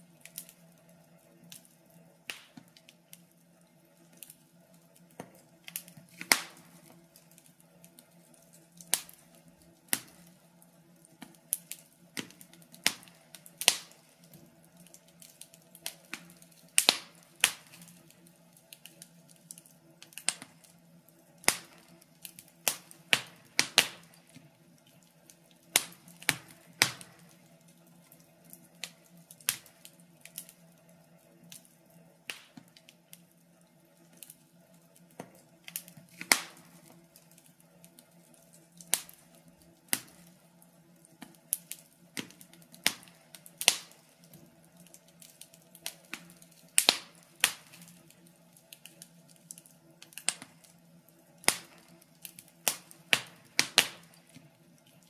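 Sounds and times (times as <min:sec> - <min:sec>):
faint steady hum: 0:00.0 - 0:55.0
wood fire crackling: 0:00.0 - 0:55.0.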